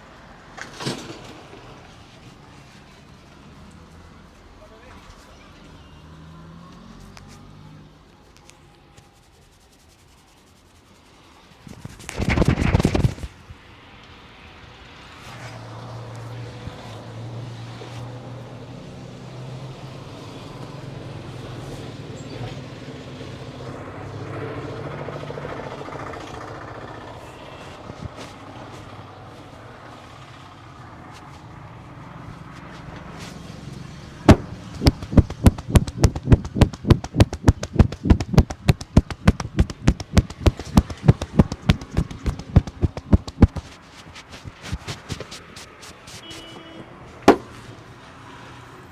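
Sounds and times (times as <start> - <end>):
road traffic hum: 0.0 - 48.9
fast even patter: 9.2 - 13.4, 34.3 - 46.5
hands slapping in massage: 11.7 - 13.3, 34.3 - 46.5.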